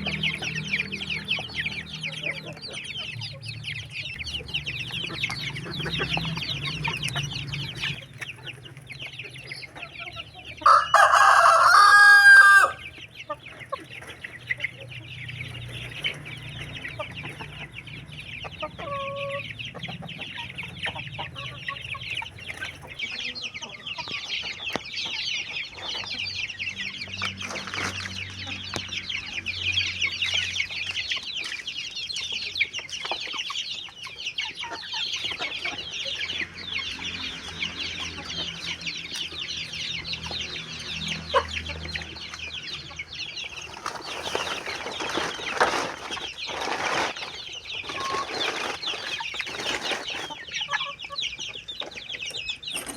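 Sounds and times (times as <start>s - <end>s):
chickens clucking: 0.0s - 52.9s
rooster crowing: 10.6s - 12.8s.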